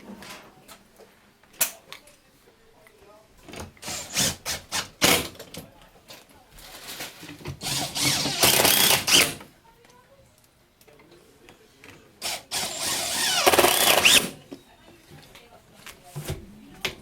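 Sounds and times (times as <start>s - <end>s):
cordless drill driving screws: 7.6s - 9.4s, 12.2s - 14.4s.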